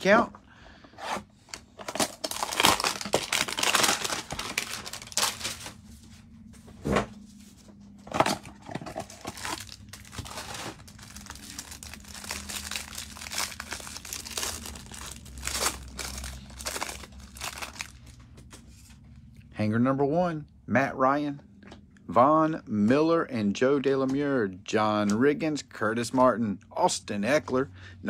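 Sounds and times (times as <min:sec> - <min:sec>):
plastic wrapping crinkling and tearing: 0:01.8 - 0:05.8, 0:08.2 - 0:18.2.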